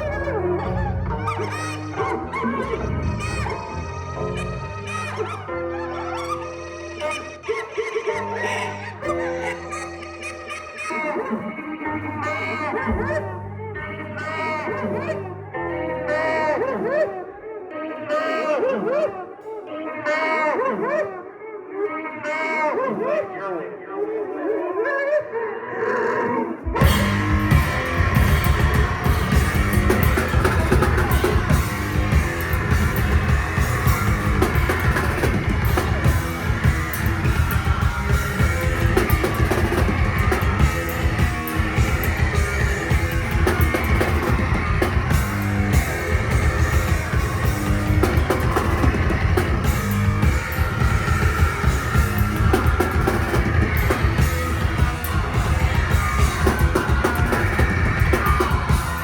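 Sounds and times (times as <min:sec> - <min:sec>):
distorted bass guitar: 0:00.0 - 0:06.1, 0:26.7 - 0:59.0
fast drum kit playing: 0:26.8 - 0:59.0.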